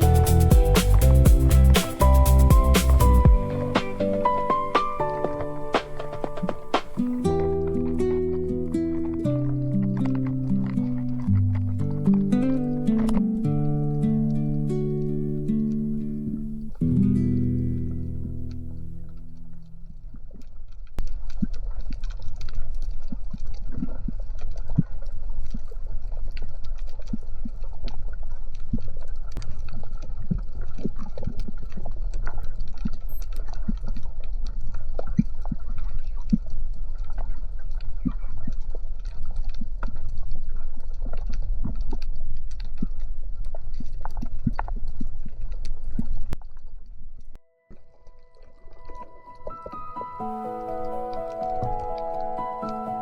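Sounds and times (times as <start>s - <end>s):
underwater rumble: 0.0s - 53.0s
underwater clicks and crackles: 4.5s - 17.0s, 17.7s - 53.0s.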